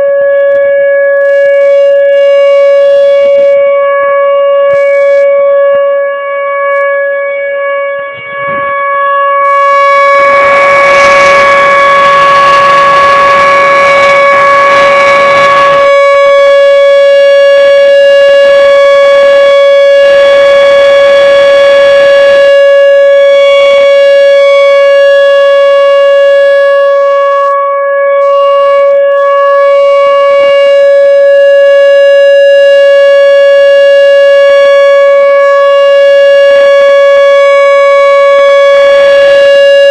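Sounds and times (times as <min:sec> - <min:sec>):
outdoor warning siren steady tone: 0:00.0 - 0:39.9
rushing noise: 0:09.5 - 0:17.1.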